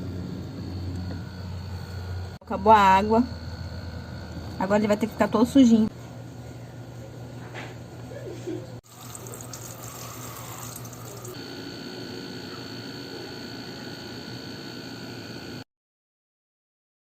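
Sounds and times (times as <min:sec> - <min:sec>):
high whine: 0:00.0 - 0:05.9
running water rushing: 0:08.8 - 0:11.4.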